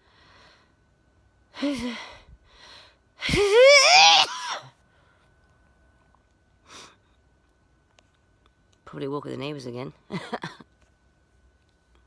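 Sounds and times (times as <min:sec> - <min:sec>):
woman sneezing: 0:03.2 - 0:04.7.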